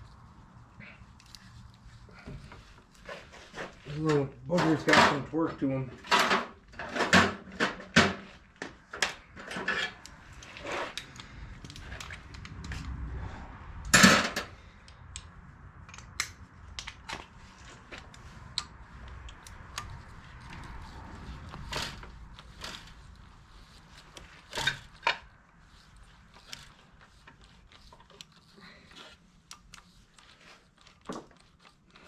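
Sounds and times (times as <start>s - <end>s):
hand tools on metal parts: 1.1s - 12.9s, 13.9s - 32.0s.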